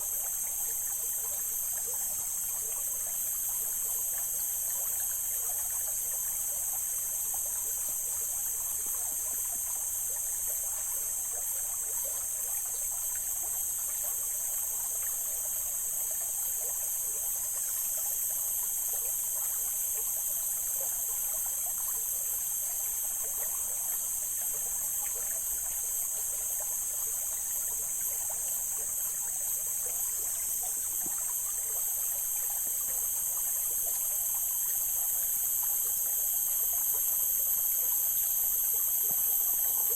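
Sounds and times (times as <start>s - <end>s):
high-pitched hiss: 0.0s - 39.9s
stream water flowing over rocks: 25.0s - 39.9s.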